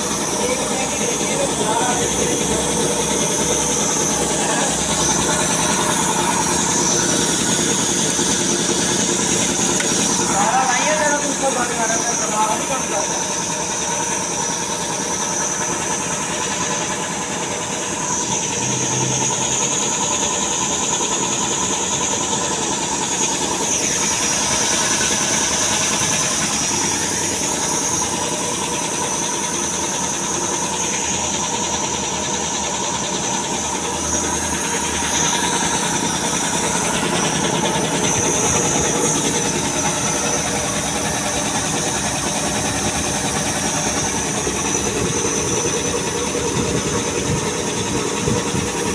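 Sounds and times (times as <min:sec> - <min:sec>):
air compressor running: 0:00.0 - 0:48.9.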